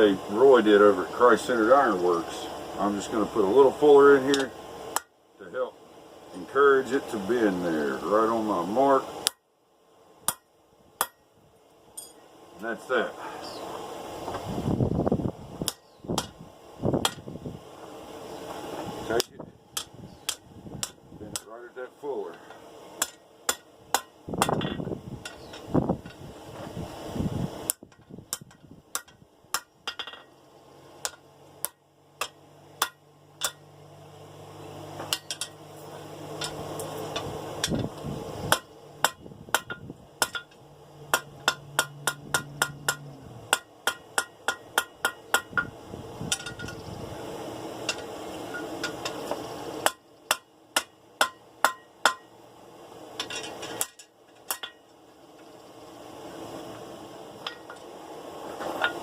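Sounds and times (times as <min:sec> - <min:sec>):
steady low hum: 0:00.0 - 0:59.0
hammer striking steel on anvil: 0:10.2 - 0:11.2, 0:12.0 - 0:12.2, 0:15.6 - 0:16.4, 0:17.0 - 0:17.2, 0:23.0 - 0:26.2, 0:27.7 - 0:30.3, 0:31.0 - 0:33.7, 0:35.0 - 0:35.6, 0:36.4 - 0:37.8, 0:38.5 - 0:45.7, 0:49.8 - 0:52.3, 0:53.2 - 0:54.8.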